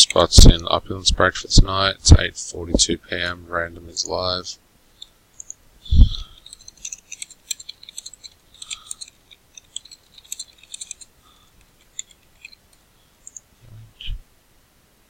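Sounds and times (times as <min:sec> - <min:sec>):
keyboard and mouse clicks: 0:05.0 - 0:05.6, 0:06.4 - 0:13.5.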